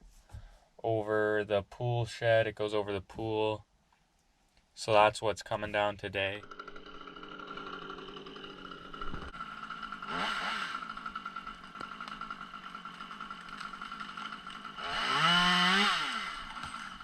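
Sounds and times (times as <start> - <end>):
chainsaw idling and revving: 6.3 - 17.0.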